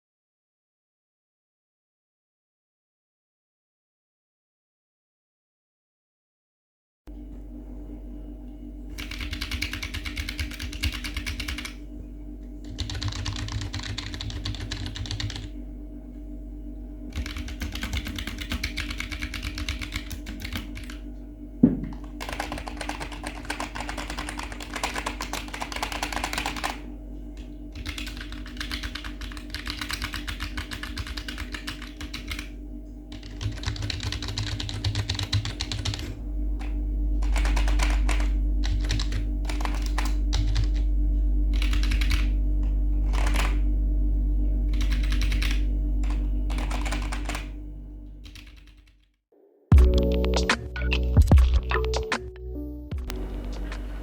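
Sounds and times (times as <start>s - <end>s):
typing on mechanical keyboard: 9.0s - 11.8s, 12.6s - 15.5s, 17.1s - 21.0s, 22.0s - 26.8s, 27.7s - 32.5s, 33.1s - 36.0s, 37.2s - 40.8s, 41.5s - 42.3s, 43.0s - 43.6s, 44.7s - 47.5s, 48.2s - 49.0s
sharp knock: 21.6s - 21.9s.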